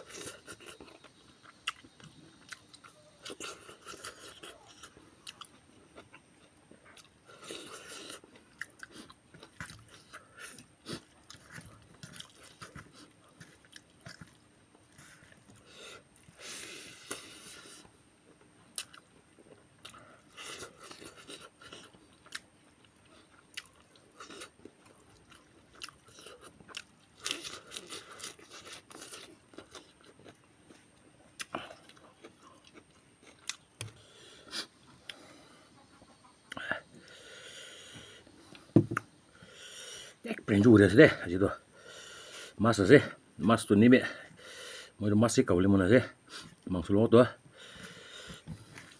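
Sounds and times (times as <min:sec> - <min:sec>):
person chewing crunchy food: 0:00.0 - 0:35.4.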